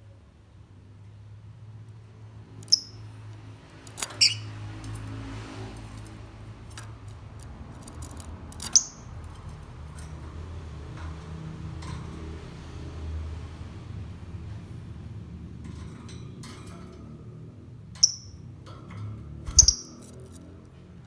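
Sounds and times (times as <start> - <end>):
lovebird shrill chirps: 2.6 - 3.0, 4.2 - 4.6, 8.7 - 9.1, 19.5 - 20.0.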